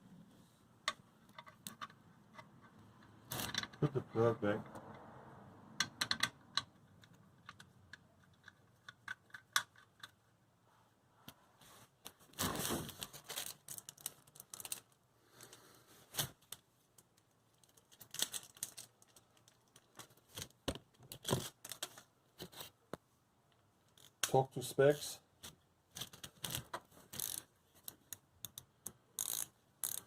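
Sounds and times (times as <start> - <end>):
metallic clicks of hand tools: 26.4 - 30.0.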